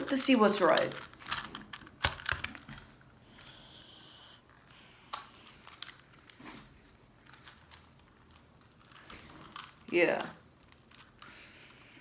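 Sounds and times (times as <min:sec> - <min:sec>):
plastic cube clicking: 0:00.7 - 0:02.9.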